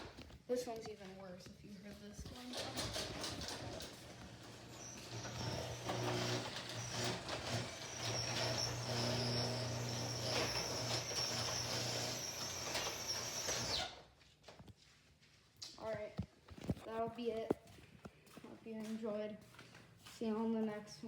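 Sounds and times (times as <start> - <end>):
door rollers and hinges squeaking: 2.3 - 14.0
garage door motor humming: 2.4 - 14.0.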